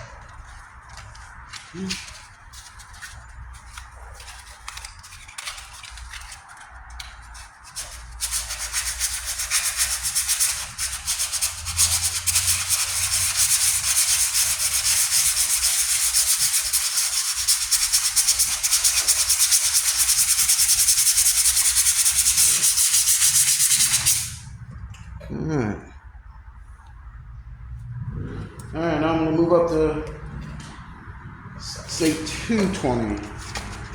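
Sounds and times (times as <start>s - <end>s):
sandpaper scratching on metal: 7.2s - 24.4s.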